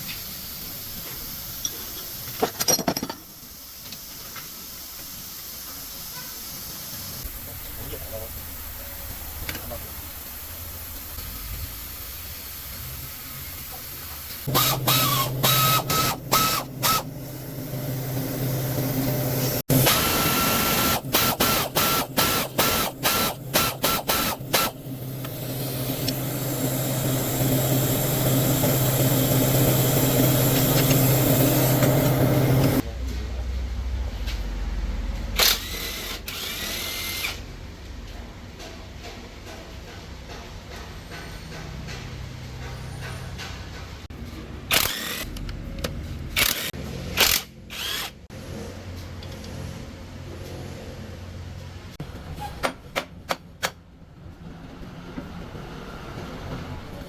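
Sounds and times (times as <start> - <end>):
electric power tool motor: 14.5 - 32.8, 46.4 - 48.2.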